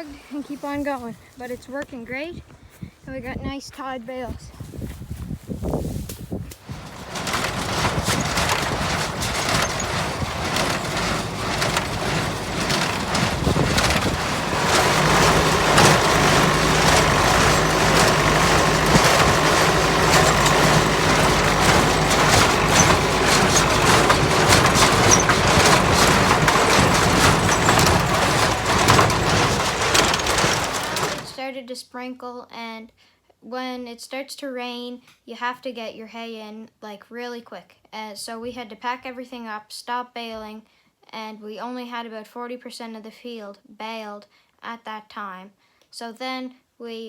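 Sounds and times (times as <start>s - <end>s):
baler mechanical clatter: 6.6s - 31.4s
tractor engine running: 6.6s - 31.4s.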